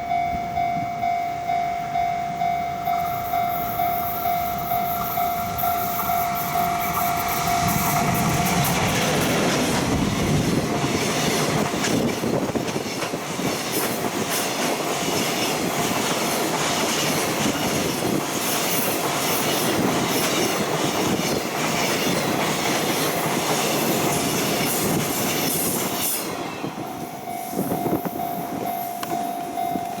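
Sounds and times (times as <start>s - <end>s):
level-crossing alarm ringing: 0.0s - 10.9s, 24.9s - 30.0s
train wheels clattering over rail joints: 6.0s - 27.0s.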